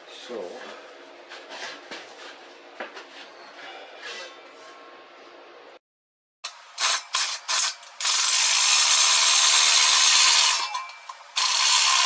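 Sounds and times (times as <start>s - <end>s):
power tool working metal: 6.5s - 12.0s.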